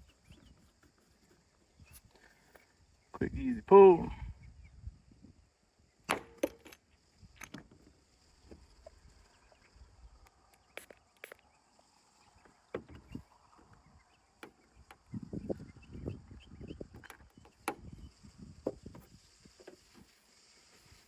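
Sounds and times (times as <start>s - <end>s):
hand tools clicking and knocking: 6.1s - 6.8s.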